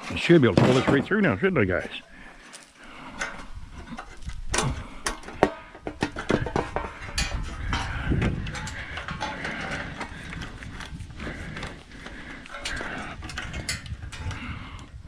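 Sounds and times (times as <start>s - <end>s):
knocking and scraping of stove parts: 0.4s - 1.2s, 3.2s - 10.9s.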